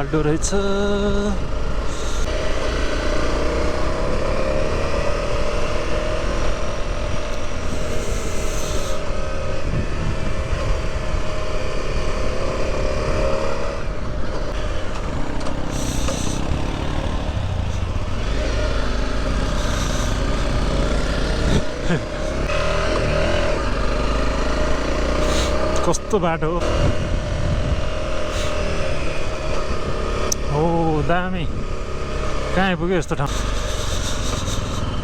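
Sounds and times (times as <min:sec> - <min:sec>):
motorcycle engine revving: 0:00.0 - 0:35.0
wind noise on microphone: 0:05.7 - 0:24.1, 0:26.6 - 0:30.4, 0:31.3 - 0:32.0.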